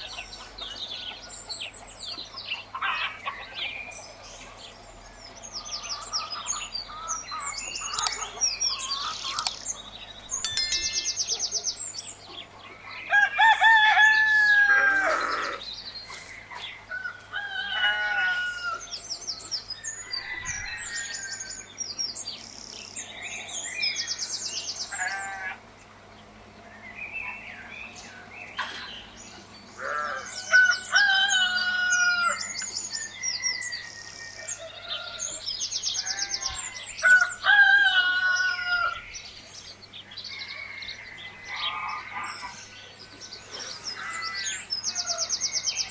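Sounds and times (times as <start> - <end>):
small birds chirping: 0.0 - 12.9, 39.0 - 45.9
roosters crowing: 13.0 - 15.8, 16.9 - 19.2, 19.8 - 21.8, 24.9 - 25.7, 29.7 - 39.2, 40.0 - 45.9.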